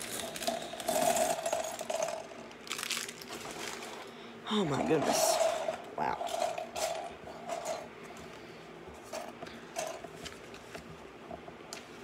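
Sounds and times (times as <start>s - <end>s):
plastic bricks clicking and rattling: 0.0s - 3.9s
faint hum-like tones: 0.0s - 12.0s.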